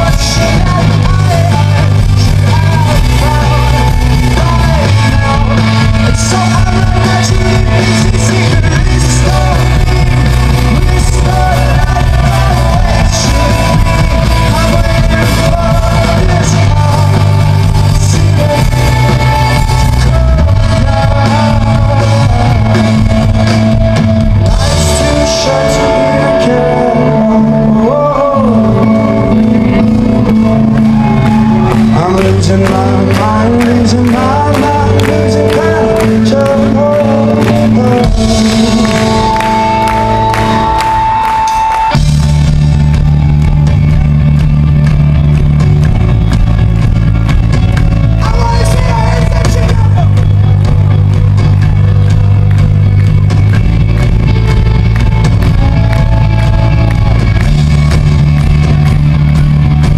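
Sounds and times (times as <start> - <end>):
lead singer singing: 0.0 - 43.5, 48.0 - 52.4
bass and drums: 0.0 - 59.9
live rock band playing: 0.0 - 59.9.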